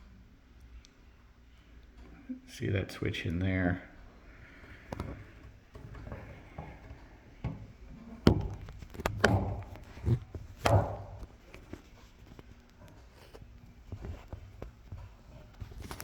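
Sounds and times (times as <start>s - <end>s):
hardware knocking on work surface: 5.8s - 11.3s.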